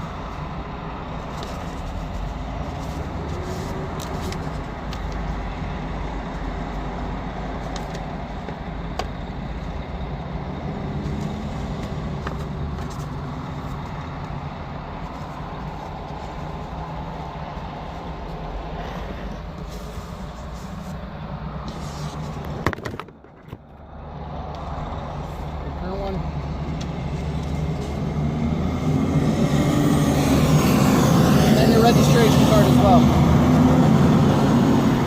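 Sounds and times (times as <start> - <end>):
road traffic rumble: 0.0 - 35.0.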